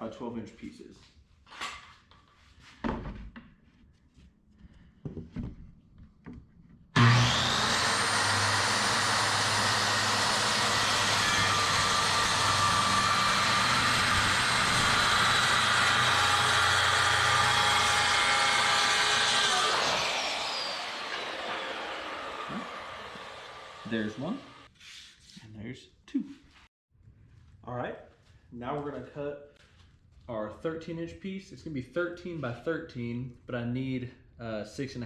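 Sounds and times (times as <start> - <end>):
power saw cutting plywood: 7.0 - 24.7.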